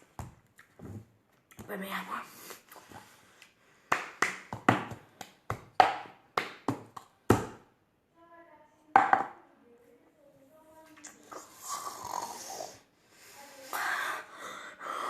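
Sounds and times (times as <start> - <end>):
sharp knocks on hard surface: 9.0 - 9.4.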